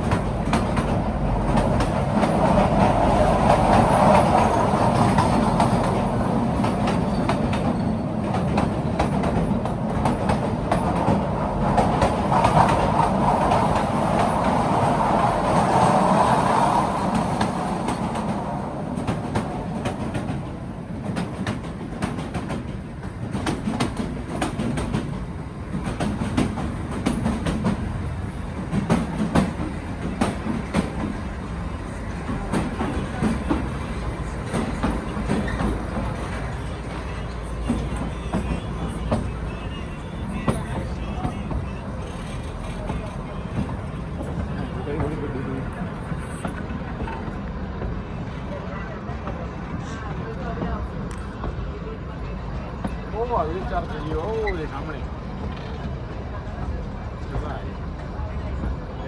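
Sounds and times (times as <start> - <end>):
train wheels rumbling: 0.0 - 59.0
wheels clicking over rail joints: 52.8 - 58.7.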